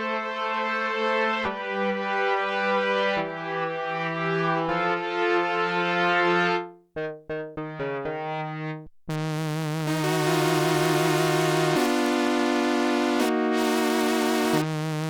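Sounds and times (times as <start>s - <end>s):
bright buzzy synth tone: 9.1s - 15.0s
synthesizer brass-like note: 9.1s - 15.0s.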